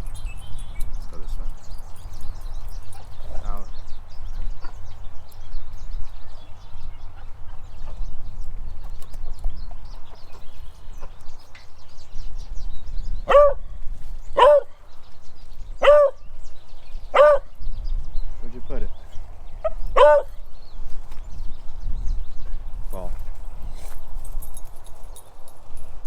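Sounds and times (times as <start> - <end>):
wind rumbling on microphone: 0.0 - 26.0
dog barking: 13.3 - 13.6, 14.4 - 14.7, 15.8 - 16.2, 17.1 - 17.5, 19.6 - 20.4.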